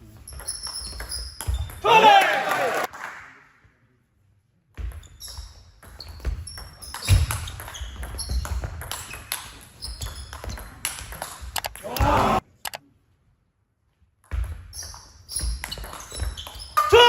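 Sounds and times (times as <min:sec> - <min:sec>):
shoes squeaking on floor: 0:00.0 - 0:01.9, 0:05.0 - 0:12.4, 0:14.6 - 0:17.0.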